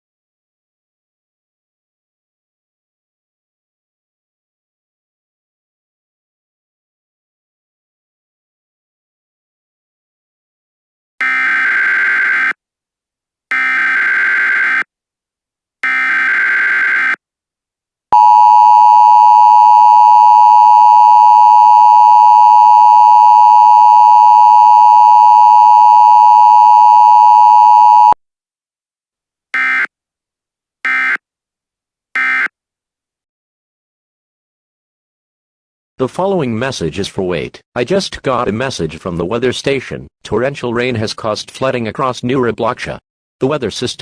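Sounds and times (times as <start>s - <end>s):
two-tone alert signal: 18.2s - 28.2s.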